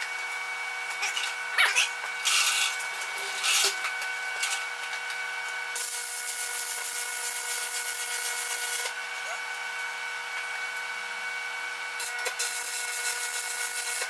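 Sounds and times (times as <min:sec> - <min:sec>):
hissing welding arc: 0:05.8 - 0:08.9, 0:12.1 - 0:14.0.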